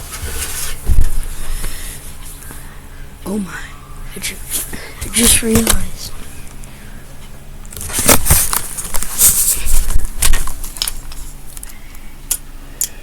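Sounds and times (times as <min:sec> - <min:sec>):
objects rustling: 0:07.7 - 0:11.8.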